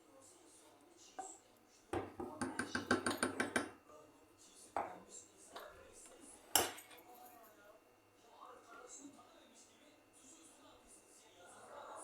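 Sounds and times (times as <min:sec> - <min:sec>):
spoon clinking against dish: 0:02.0 - 0:03.8.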